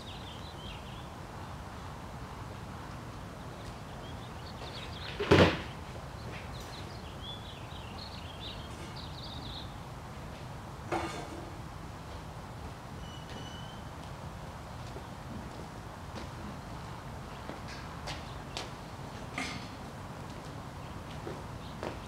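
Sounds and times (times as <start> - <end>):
small birds chirping: 0.0 - 9.8, 20.6 - 22.0.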